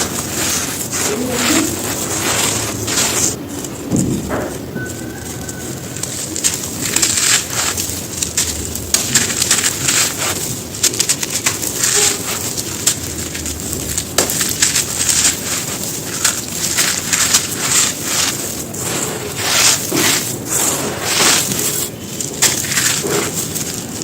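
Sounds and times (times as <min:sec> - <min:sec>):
stone chunks crushed by hand: 0:00.0 - 0:24.0
bird cooing: 0:01.0 - 0:02.7, 0:04.3 - 0:06.0.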